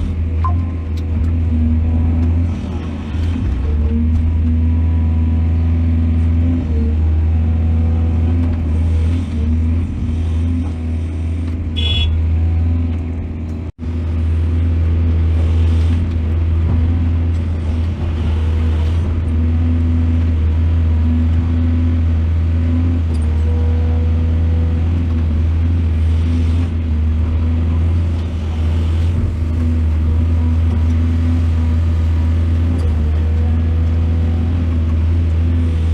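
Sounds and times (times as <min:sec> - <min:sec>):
excavator diesel engine running: 0:00.0 - 0:35.9.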